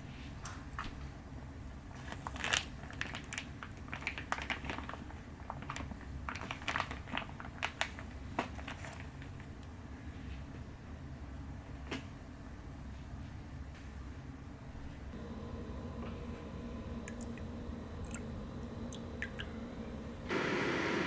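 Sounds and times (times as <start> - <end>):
low steady hum: 12.4 - 21.0.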